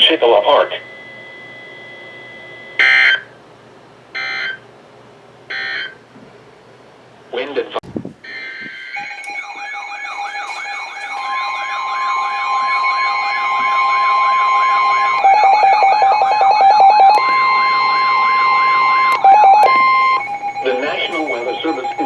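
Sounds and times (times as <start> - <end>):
wailing siren tone: 8.2 - 22.0
electronic beeps: 8.3 - 22.0
fast pulsing beep: 19.0 - 22.0.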